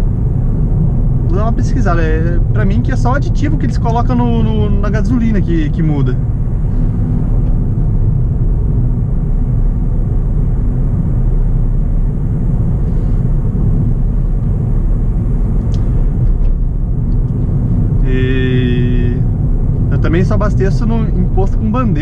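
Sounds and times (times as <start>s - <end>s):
car engine and road noise: 0.0s - 22.0s.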